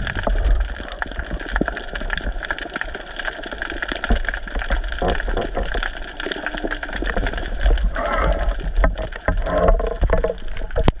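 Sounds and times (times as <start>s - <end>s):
low rumble: 0.0s - 1.1s
crackling clicks: 0.0s - 11.0s
water gurgling and sloshing: 0.0s - 11.0s.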